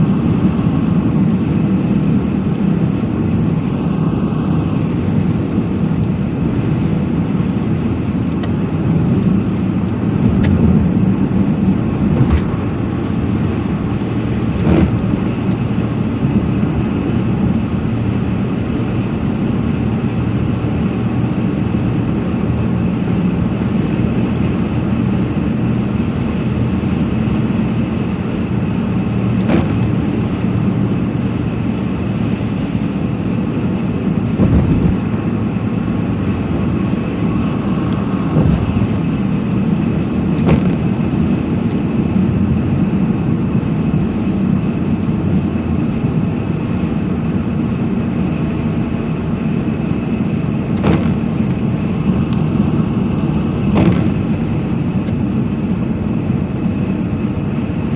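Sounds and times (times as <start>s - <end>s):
steady low rumbling: 0.0s - 46.2s.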